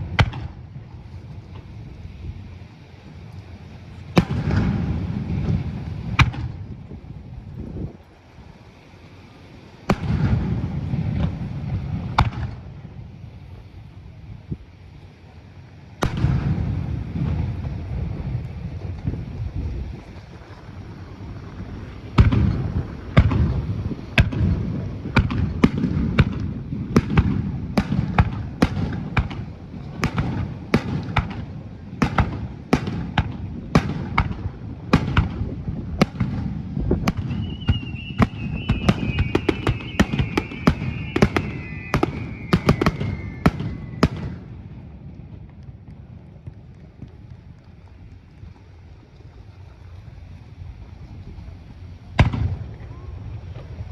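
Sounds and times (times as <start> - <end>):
low rumble: 0.0 - 53.9
fireworks cracking: 3.7 - 7.3, 9.8 - 13.3, 15.9 - 49.0
high falling whistle: 37.3 - 44.4.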